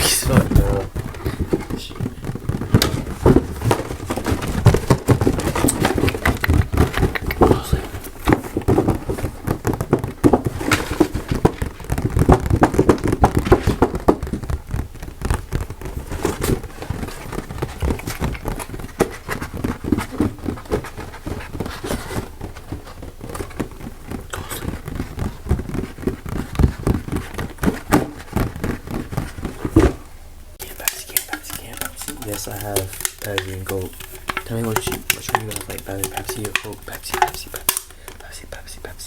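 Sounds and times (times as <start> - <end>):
scraping on an object: 0.0 - 30.0
fast tapping on an object: 0.0 - 39.0.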